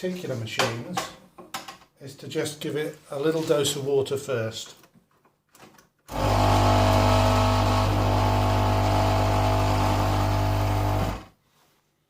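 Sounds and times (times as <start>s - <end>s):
espresso machine pump buzzing: 6.1s - 11.3s.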